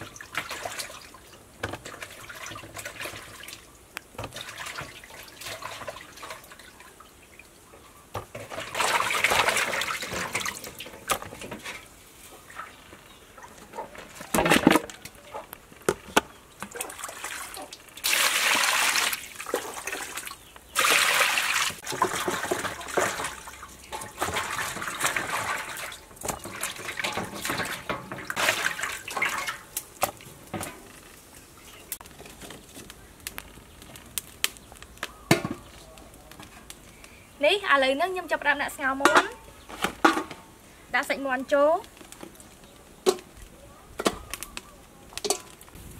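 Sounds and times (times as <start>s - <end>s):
water pouring and splashing: 0.0s - 32.6s.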